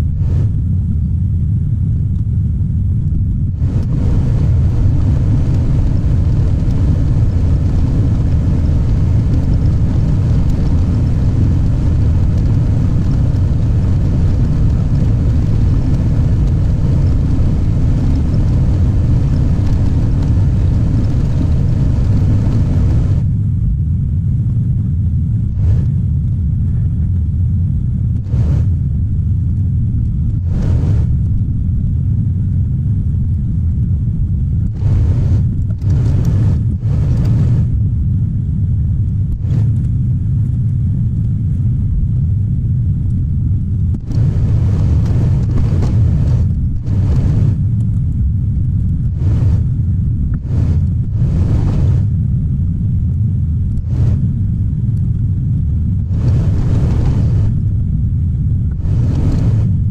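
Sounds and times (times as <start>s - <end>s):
diesel engine running: 3.4s - 23.4s, 28.1s - 29.2s, 30.0s - 31.5s, 34.6s - 37.8s, 43.9s - 48.2s, 49.0s - 52.1s, 55.8s - 57.6s, 58.7s - 59.9s
short rushes of noise: 30.4s - 31.3s, 56.0s - 57.6s.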